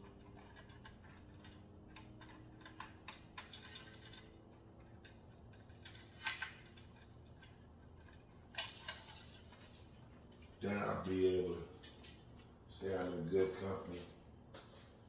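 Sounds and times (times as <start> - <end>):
bicycle parts clicking: 0.2 - 10.5.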